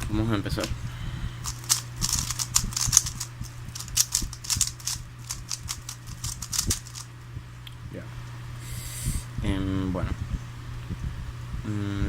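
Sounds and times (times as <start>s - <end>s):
plastic puzzle cube clicking: 1.4s - 7.0s.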